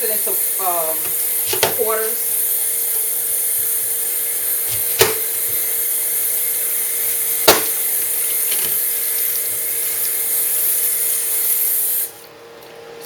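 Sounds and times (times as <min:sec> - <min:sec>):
kitchen tap running: 0:00.0 - 0:12.3
knife strikes on cutting board: 0:01.0 - 0:01.8, 0:04.7 - 0:05.6, 0:07.4 - 0:07.9
knife cutting onion: 0:01.0 - 0:02.0, 0:04.4 - 0:05.8, 0:07.0 - 0:10.5.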